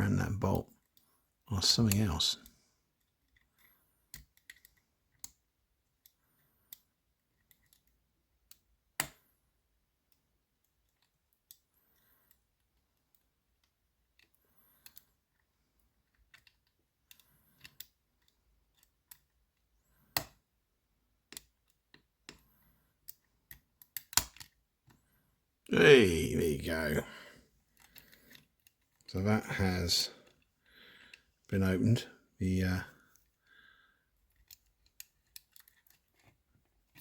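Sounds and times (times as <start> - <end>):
lock picking metallic clicks: 3.2 - 5.4, 21.3 - 24.6.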